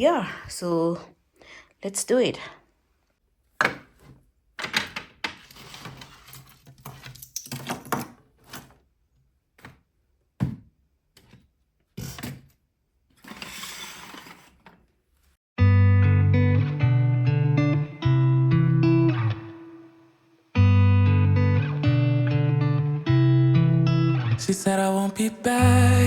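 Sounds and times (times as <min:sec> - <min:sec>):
rustling and scraping: 0:05.4 - 0:07.2, 0:13.1 - 0:15.4.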